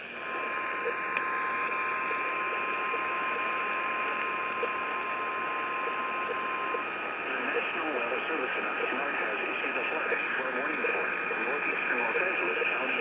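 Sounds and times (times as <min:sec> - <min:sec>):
steady alarm tone: 0:00.0 - 0:07.5
radio static hiss: 0:00.0 - 0:13.0.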